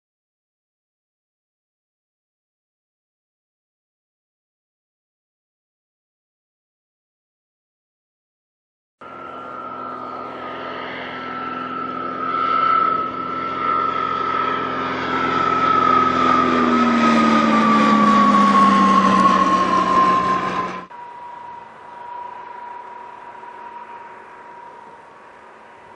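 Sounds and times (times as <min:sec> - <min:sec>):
propeller aircraft flying past: 0:09.0 - 0:25.9.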